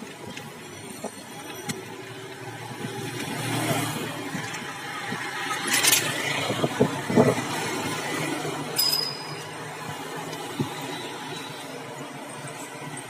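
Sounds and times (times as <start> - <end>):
busy road traffic: 0.0 - 13.0.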